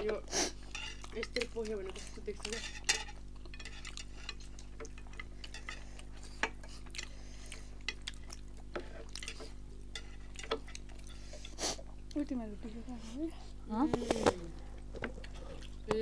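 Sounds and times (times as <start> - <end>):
utensils clicking on a plate: 0.0 - 7.1
wet stirring: 0.0 - 13.6.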